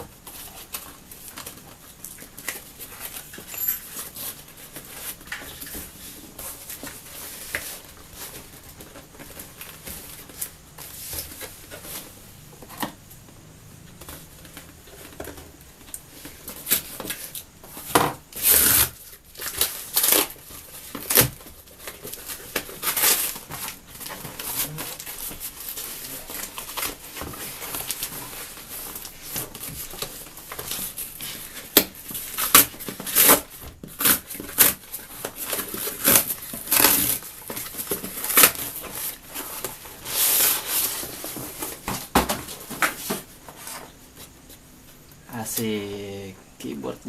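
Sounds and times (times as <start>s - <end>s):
plastic packaging crinkling and tearing: 18.3s - 43.0s.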